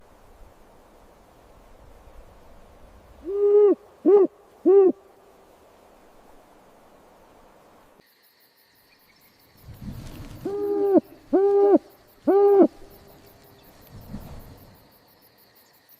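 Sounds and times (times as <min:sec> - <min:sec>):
insect chirping: 0:00.1 - 0:15.9
owl hooting: 0:03.2 - 0:05.1, 0:10.3 - 0:13.3.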